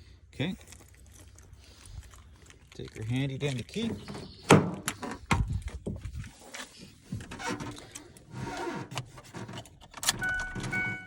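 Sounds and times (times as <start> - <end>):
handling clicks and knocks: 8.9 - 11.0.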